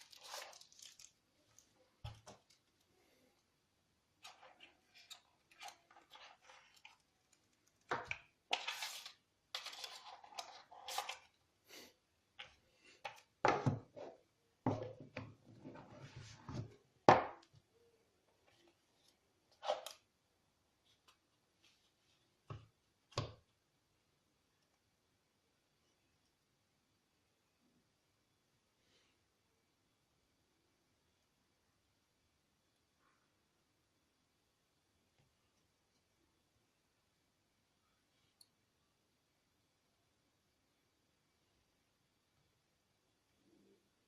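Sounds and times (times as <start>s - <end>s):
packaging rustling and scraping: 0.0s - 1.2s.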